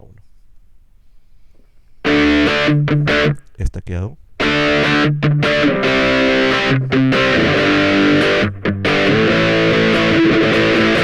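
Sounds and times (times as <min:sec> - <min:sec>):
distorted electric guitar chords: 0:02.0 - 0:03.5, 0:04.4 - 0:11.0.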